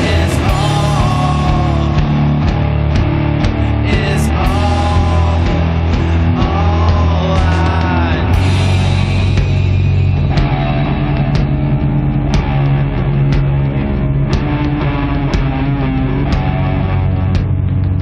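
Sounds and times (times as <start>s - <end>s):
distorted guitars and bass: 0.0s - 18.0s
higher guitar line: 0.0s - 18.0s.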